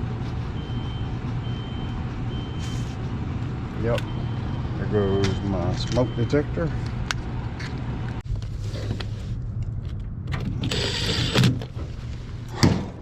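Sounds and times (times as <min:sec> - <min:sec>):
air handler humming: 0:00.0 - 0:09.6.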